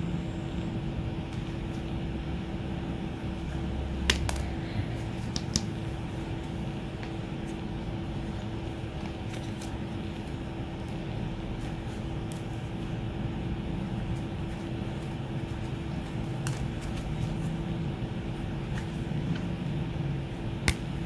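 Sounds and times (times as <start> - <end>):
steady mechanical hum: 0.0 - 21.0.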